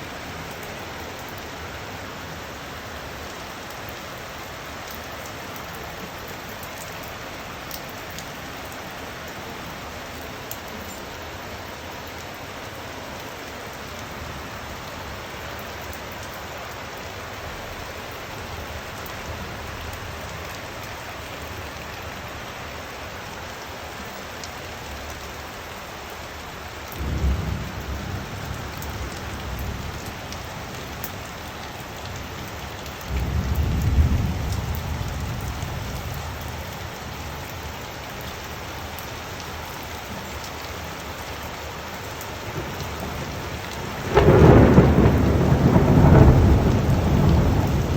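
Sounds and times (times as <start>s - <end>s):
steady rain falling: 0.0s - 47.9s
thunder claps rumbling: 27.0s - 31.4s, 33.0s - 36.4s, 42.5s - 47.9s.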